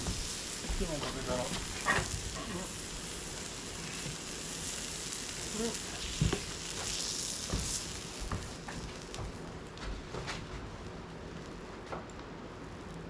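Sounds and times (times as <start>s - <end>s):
food sizzling: 0.0s - 9.7s.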